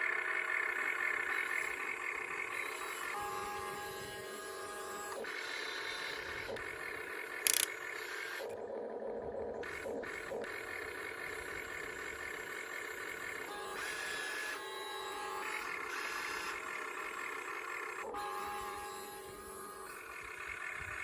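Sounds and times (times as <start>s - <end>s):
toy electric motors whining: 0.6s - 8.6s, 9.6s - 21.0s
short click: 7.5s - 7.7s.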